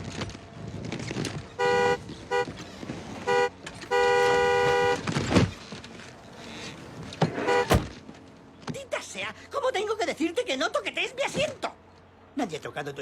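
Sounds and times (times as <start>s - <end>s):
car horn honking: 1.6s - 2.6s, 3.2s - 5.2s, 7.3s - 8.0s
thump: 7.6s - 8.0s.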